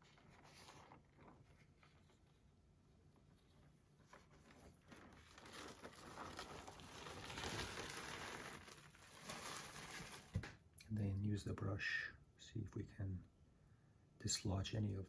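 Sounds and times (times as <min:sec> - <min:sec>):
wet sheet peeling with soft crinkling: 0:00.0 - 0:10.6.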